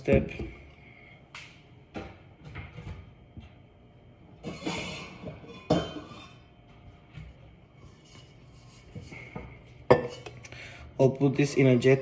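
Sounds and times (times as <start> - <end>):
glass clink: 9.9 - 10.2.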